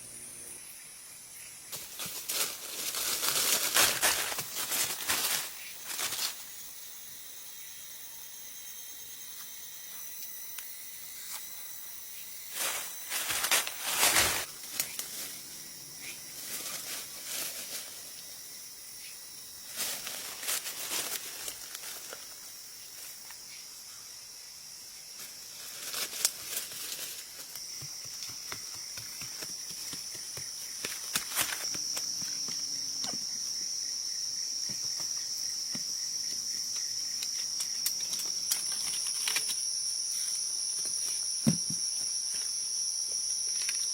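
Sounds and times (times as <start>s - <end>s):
high insect chorus: 0.0s - 43.9s
footsteps rustling through dry leaves: 1.7s - 6.5s, 12.5s - 18.3s, 19.6s - 22.4s, 25.3s - 27.6s.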